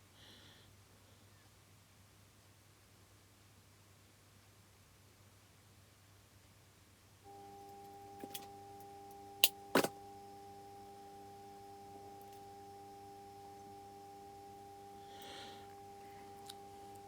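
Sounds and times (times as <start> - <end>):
small clicks: 7.3 - 17.0
steady held tone: 7.3 - 17.0.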